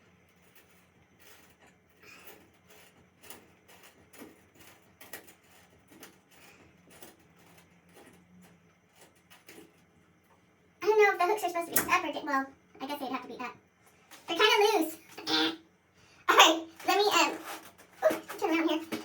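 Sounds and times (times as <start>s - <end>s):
hand tools clicking and knocking: 16.4s - 19.0s.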